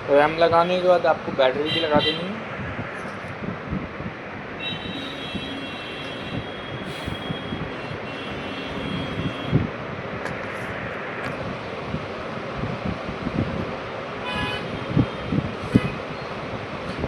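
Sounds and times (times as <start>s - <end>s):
background traffic noise: 0.0s - 17.0s
high multi-tone vehicle horn: 1.6s - 2.4s, 4.6s - 9.6s, 14.2s - 16.0s.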